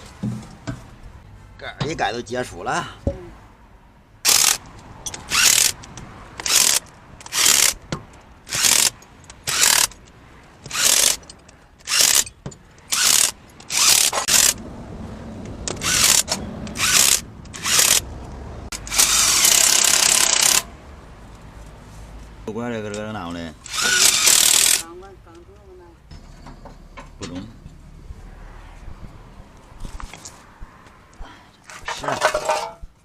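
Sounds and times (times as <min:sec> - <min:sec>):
power wrench running: 0:04.3 - 0:07.8, 0:08.5 - 0:10.0, 0:10.6 - 0:12.3, 0:12.9 - 0:14.6, 0:15.7 - 0:18.1, 0:18.7 - 0:20.7, 0:23.6 - 0:24.9.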